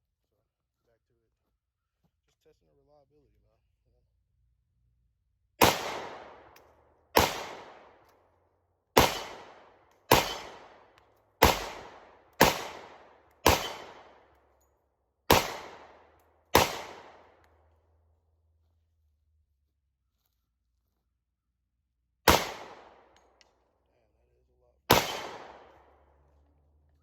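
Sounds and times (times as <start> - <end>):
pistol shots with echo: 5.6 - 8.1, 8.9 - 14.4, 15.3 - 17.5, 22.3 - 23.3, 24.9 - 26.3.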